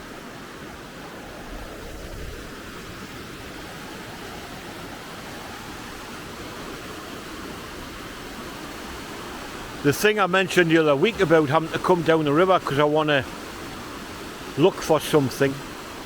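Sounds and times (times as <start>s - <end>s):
fast-running river water: 0.0s - 16.0s.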